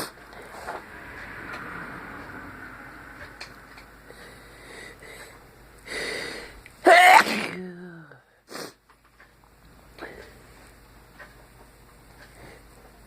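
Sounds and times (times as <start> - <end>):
noisy breath intake: 4.0 - 6.7, 12.2 - 12.9
person sneezing: 6.8 - 8.8.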